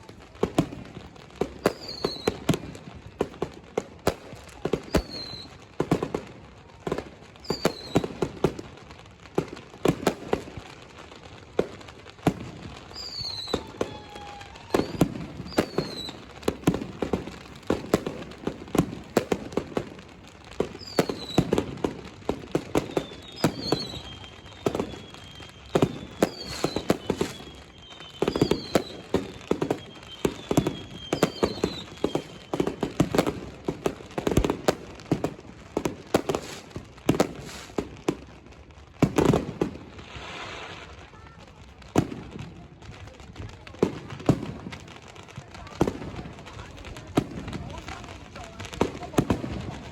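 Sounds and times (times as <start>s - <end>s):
fireworks exploding: 0.0s - 49.9s
whistling rockets: 1.5s - 2.8s, 4.5s - 5.8s, 7.4s - 8.6s, 12.3s - 20.0s, 20.6s - 35.2s.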